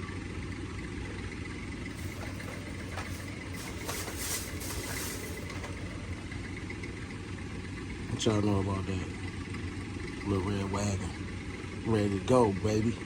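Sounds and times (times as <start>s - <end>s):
short rustling noise: 1.9s - 6.1s.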